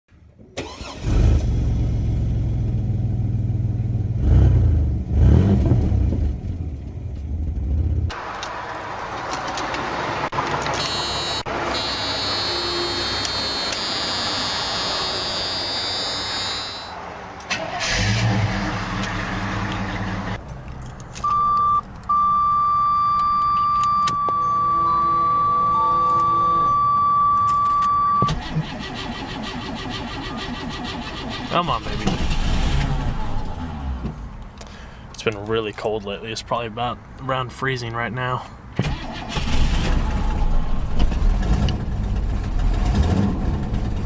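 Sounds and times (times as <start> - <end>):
car engines starting and revving: 0.4 - 35.4, 38.6 - 44.0
door chime warning tone: 21.3 - 28.3.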